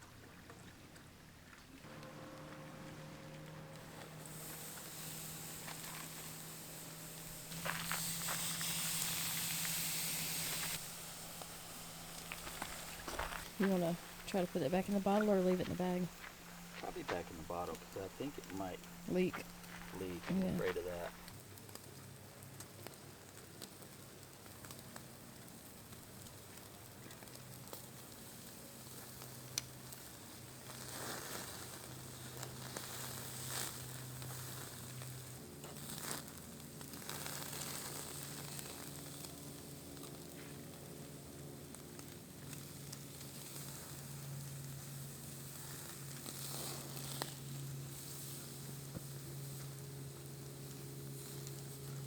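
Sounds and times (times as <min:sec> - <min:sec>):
steady low hum: 0:01.8 - 0:21.4
food sizzling in frying: 0:01.9 - 0:21.8, 0:29.0 - 0:40.2.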